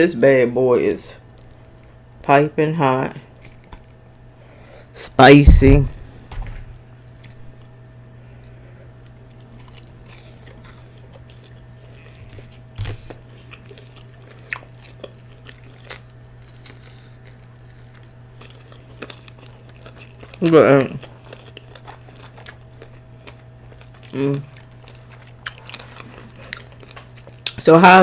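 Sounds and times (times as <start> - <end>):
steady low hum: 4.3 - 8.9
person chewing with wet smacks: 8.4 - 27.7.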